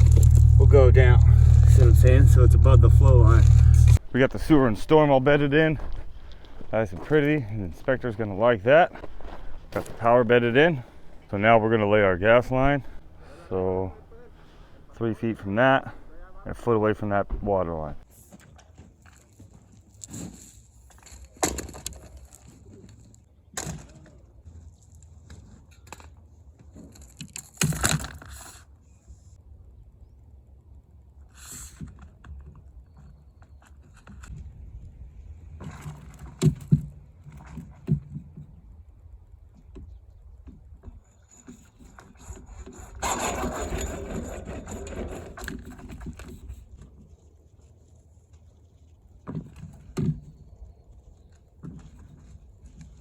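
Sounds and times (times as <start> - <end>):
low engine rumble: 0.0 - 4.6, 10.1 - 18.0
faint low rumble: 0.0 - 6.3
crunching and scraping in gravel: 0.0 - 15.4, 18.1 - 23.3.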